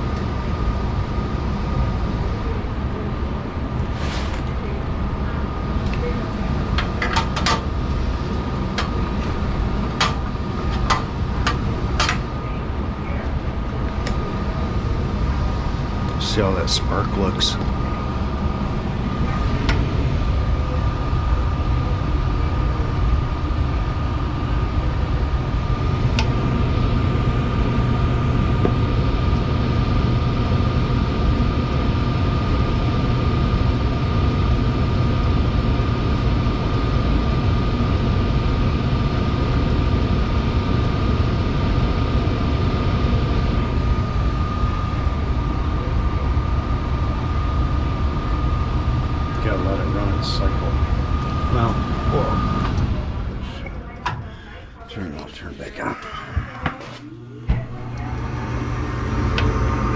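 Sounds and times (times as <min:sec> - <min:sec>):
furnace droning with whine: 0:00.0 - 0:59.9
sharp furnace click: 0:06.8 - 0:12.5.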